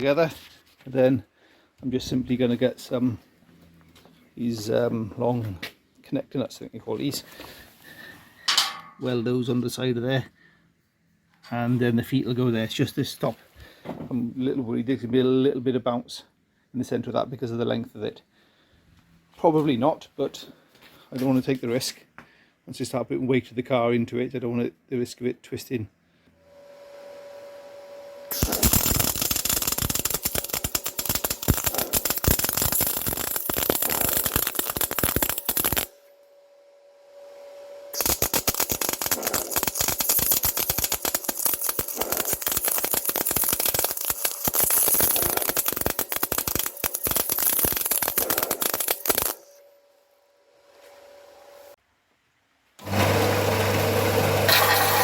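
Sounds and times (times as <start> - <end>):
welding arc crackling: 28.3 - 36.0, 37.9 - 49.6
faint steady hum: 35.3 - 38.9.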